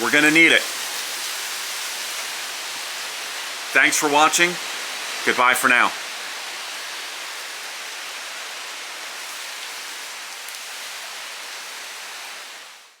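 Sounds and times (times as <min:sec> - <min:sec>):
rain: 0:00.0 - 0:13.0
wind: 0:00.0 - 0:13.0.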